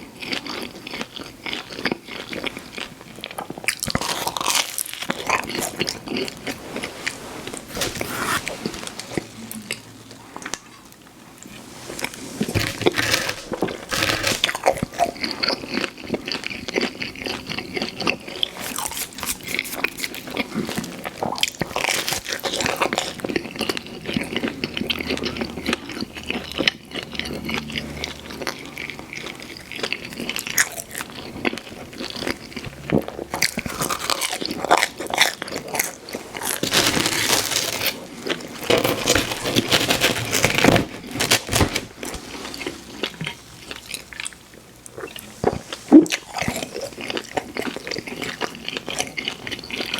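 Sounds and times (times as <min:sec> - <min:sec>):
wet chewing: 0:00.2 - 0:40.5, 0:41.1 - 0:49.9
crunchy bites into pizza crust: 0:12.4 - 0:15.6.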